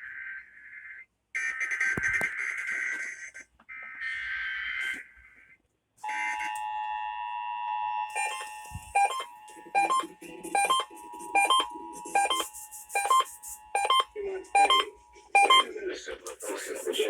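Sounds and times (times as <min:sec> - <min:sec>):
rhythmic beeping: 0:08.1 - 0:15.7
two-tone alert signal: 0:08.1 - 0:15.7.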